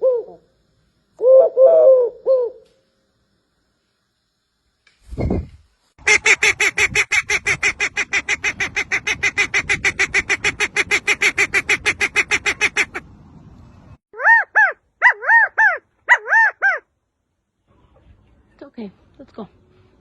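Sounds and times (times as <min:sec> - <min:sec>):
bird harsh repeated calls: 0:06.0 - 0:13.0, 0:14.2 - 0:16.9.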